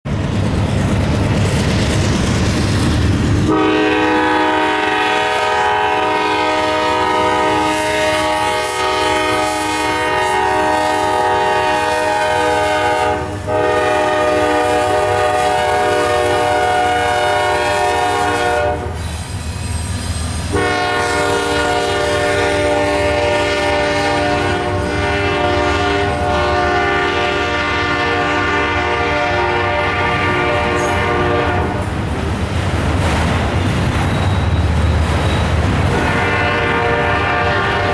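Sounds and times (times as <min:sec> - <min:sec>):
rumble of passing train: 0:00.0 - 0:37.9
locomotive air horn blasts: 0:03.5 - 0:19.0, 0:20.5 - 0:31.8, 0:35.9 - 0:37.9.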